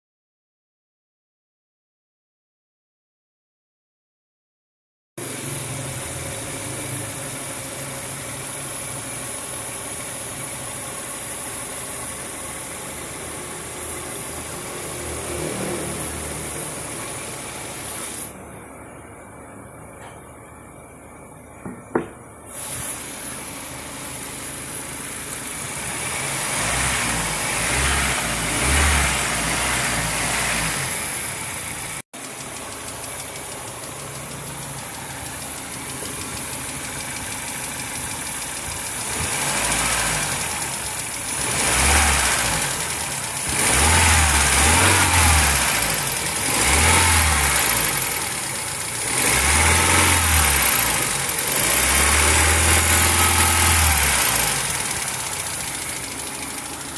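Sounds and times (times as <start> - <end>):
car engine running: 5.2 - 56.9
engine tapping noise: 30.1 - 56.9.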